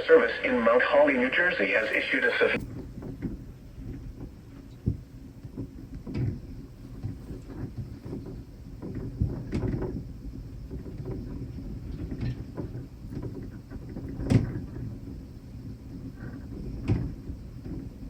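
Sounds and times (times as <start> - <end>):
radio static crackling: 0.0 - 2.6.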